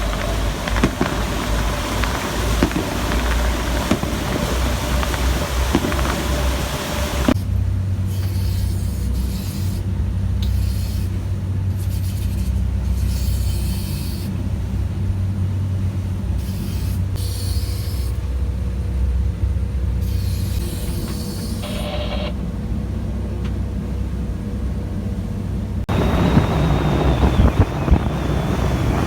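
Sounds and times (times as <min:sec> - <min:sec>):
bursts of hiss: 0:00.0 - 0:07.4
large engine rumbling: 0:00.0 - 0:13.2, 0:14.2 - 0:17.2, 0:18.1 - 0:29.0.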